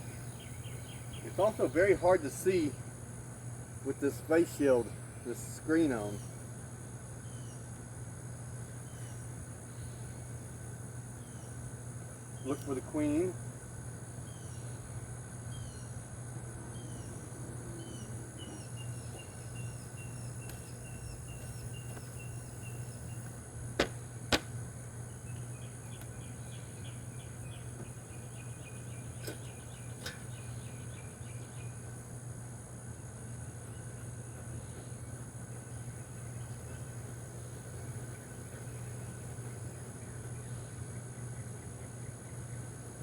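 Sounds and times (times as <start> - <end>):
bird chirping: 0.0 - 2.0, 15.5 - 16.0, 16.7 - 23.4, 25.1 - 31.8
insect drone: 0.0 - 43.0
sharp knocks: 23.8 - 24.5.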